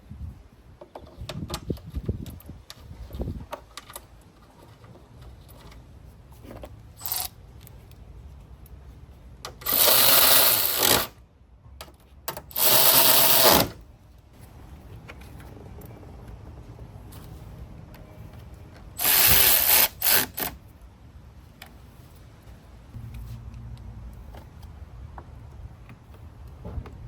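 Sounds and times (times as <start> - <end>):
cordless power tool running: 9.7 - 11.1, 12.6 - 13.8, 19.0 - 20.5.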